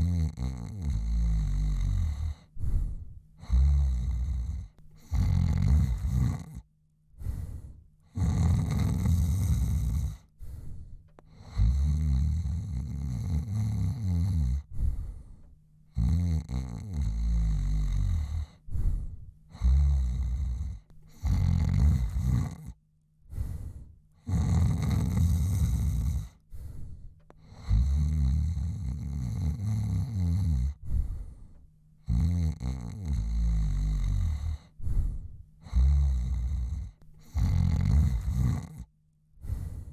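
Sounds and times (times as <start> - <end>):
man snoring: 0.0 - 31.3, 32.0 - 39.9.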